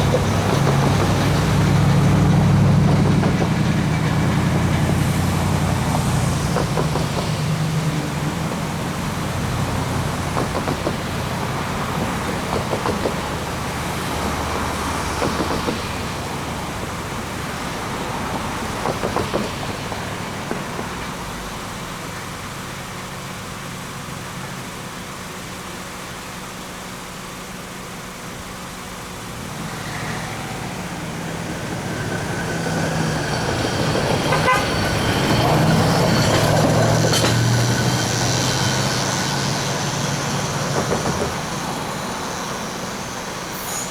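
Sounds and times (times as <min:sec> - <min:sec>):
freight train moving: 0:00.0 - 0:43.9
train horn: 0:31.8 - 0:40.5.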